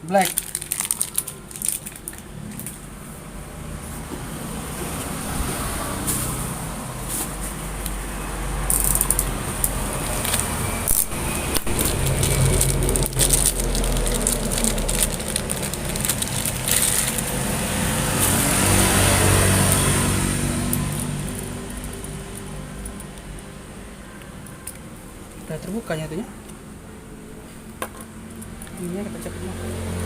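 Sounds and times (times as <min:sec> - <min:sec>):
steady low rumble: 0:08.8 - 0:18.3.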